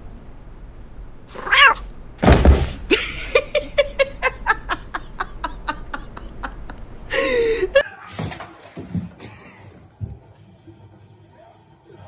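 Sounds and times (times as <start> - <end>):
rhythmic laughter: 2.9 - 7.9.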